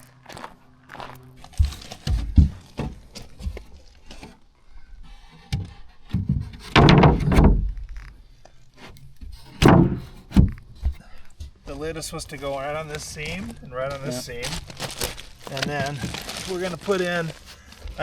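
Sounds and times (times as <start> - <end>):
wooden knocks and thuds: 1.5 - 4.4, 5.5 - 8.1, 9.2 - 11.6.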